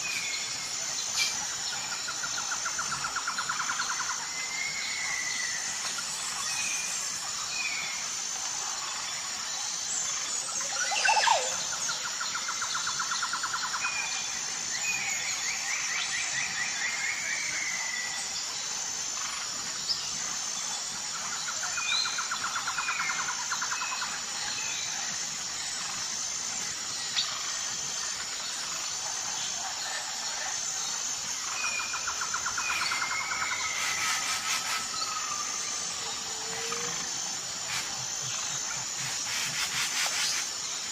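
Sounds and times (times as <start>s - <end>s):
high pulsing buzz: 22.2s - 40.9s.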